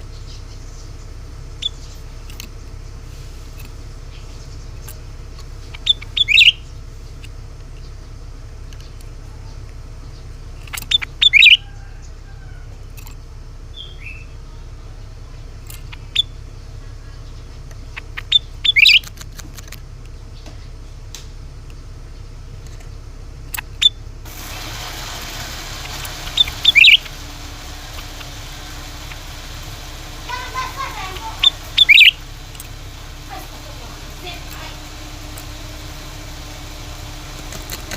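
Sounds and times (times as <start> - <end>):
steady low hum: 0.0 - 37.9
bird chirping sharply: 5.7 - 6.7, 10.8 - 11.7, 13.7 - 14.4, 17.2 - 19.1, 25.8 - 37.9.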